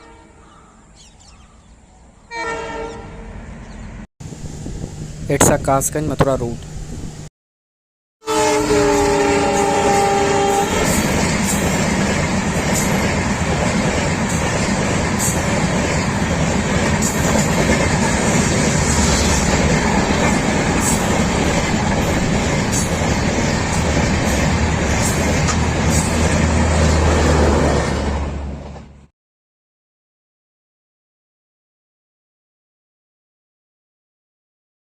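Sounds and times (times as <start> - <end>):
train horn: 0.0 - 0.5, 2.3 - 3.3, 8.2 - 11.2
train rumbling across bridge: 2.1 - 7.3, 8.3 - 29.1.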